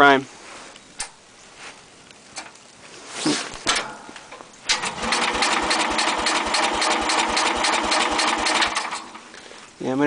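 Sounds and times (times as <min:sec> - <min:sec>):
electric starter cranking engine: 0:04.7 - 0:09.5.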